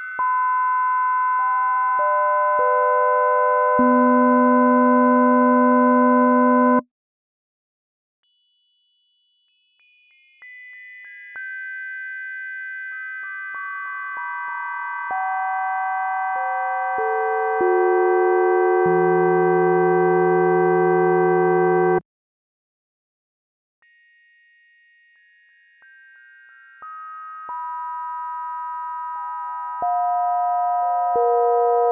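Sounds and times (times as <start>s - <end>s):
synthesized bell tones: 0.0s - 6.8s, 15.1s - 22.0s.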